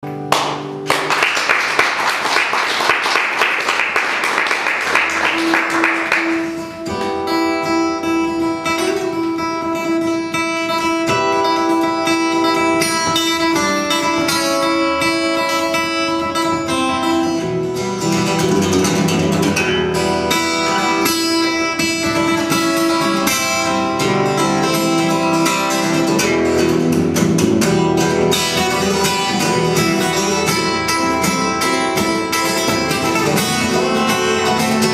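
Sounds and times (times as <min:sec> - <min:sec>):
acoustic guitar playing: 0:00.0 - 0:34.9.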